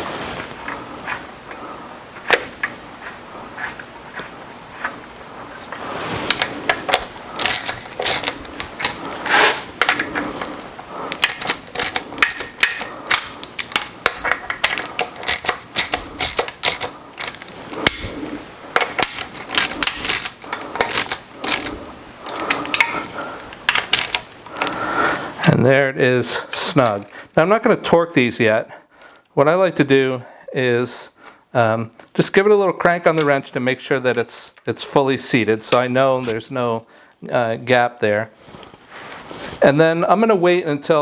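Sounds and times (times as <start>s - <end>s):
hand ratchet clicking: 6.3s - 18.1s, 18.7s - 24.8s.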